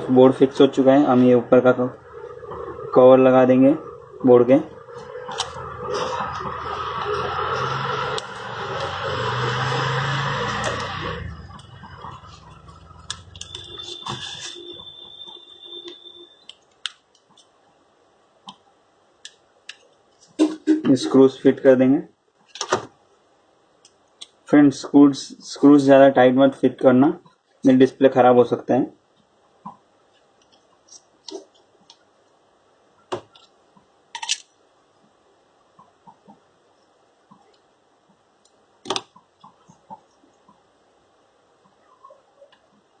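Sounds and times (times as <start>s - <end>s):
faint steady high tone: 10.0s - 16.6s.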